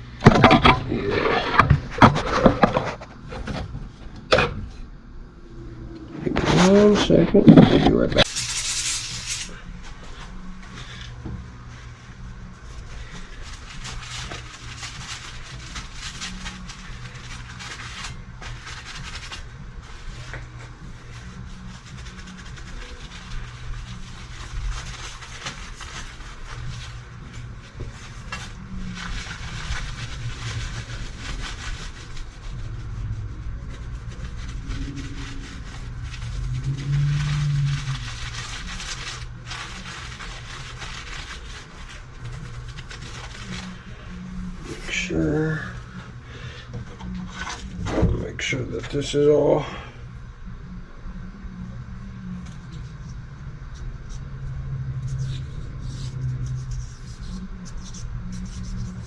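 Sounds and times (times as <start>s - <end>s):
steady low hum: 0.0s - 59.0s
rustling: 5.8s - 48.0s.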